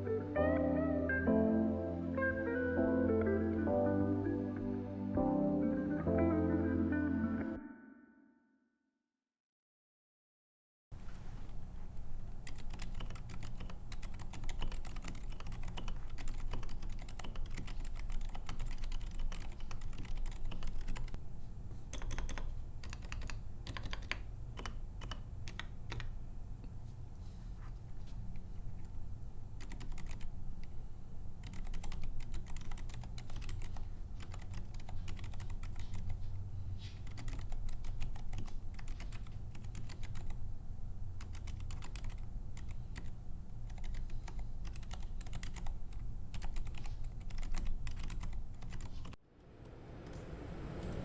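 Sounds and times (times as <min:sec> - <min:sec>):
typing on a mechanical keyboard: 0:12.1 - 0:21.2, 0:21.9 - 0:26.2, 0:28.3 - 0:30.8, 0:31.4 - 0:36.3, 0:37.0 - 0:40.4, 0:41.2 - 0:49.2.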